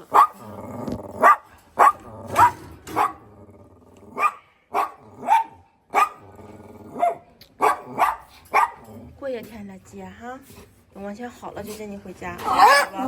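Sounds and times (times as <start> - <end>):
dog barking: 0.0 - 0.4, 1.2 - 3.2, 4.1 - 6.3, 7.0 - 8.9, 12.4 - 13.0
dog growling: 0.0 - 9.2.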